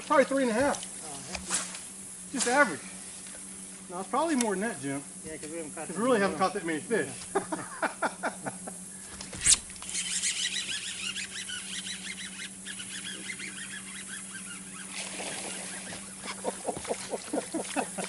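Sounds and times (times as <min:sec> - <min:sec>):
steady low hum: 0:00.0 - 0:18.0
birds chirping: 0:02.0 - 0:18.0.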